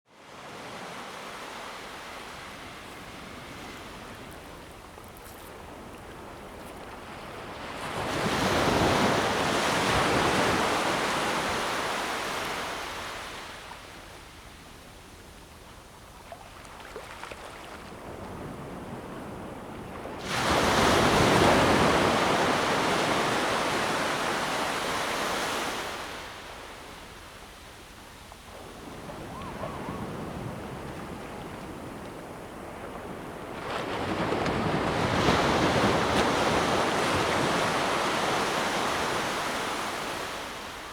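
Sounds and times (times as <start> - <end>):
sea waves breaking on beach: 16.3 - 27.8, 28.4 - 40.9.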